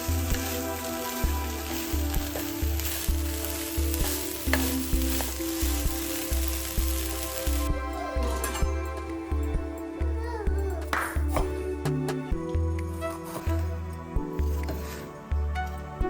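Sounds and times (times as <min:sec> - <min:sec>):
food sizzling in a frying pan: 0:00.0 - 0:08.7
background music with low beat: 0:00.0 - 0:16.0.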